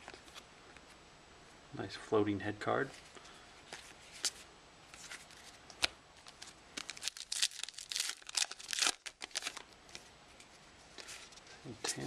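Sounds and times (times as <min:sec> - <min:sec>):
plastic wrapper tearing and crinkling: 0:05.8 - 0:09.8.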